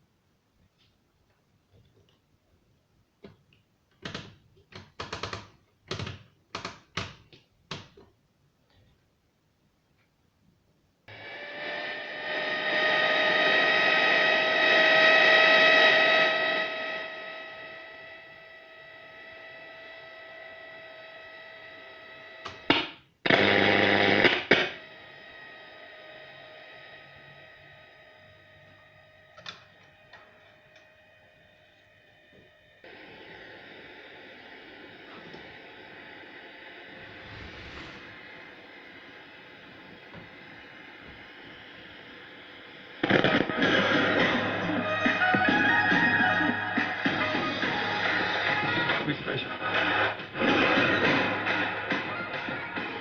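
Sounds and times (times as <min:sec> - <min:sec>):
radio static hiss: 0:18.8 - 0:29.6, 0:32.9 - 0:44.8, 0:47.7 - 0:51.8
loud burst of static: 0:22.7 - 0:25.2, 0:36.7 - 0:41.4.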